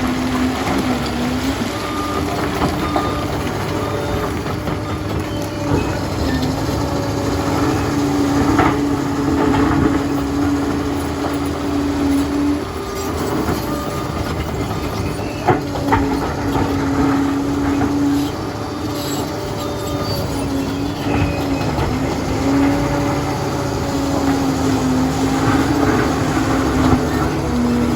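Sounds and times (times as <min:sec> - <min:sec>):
diesel engine running: 0:00.0 - 0:27.9
steel tracks clanking: 0:00.0 - 0:27.9
high squeal: 0:09.8 - 0:23.6.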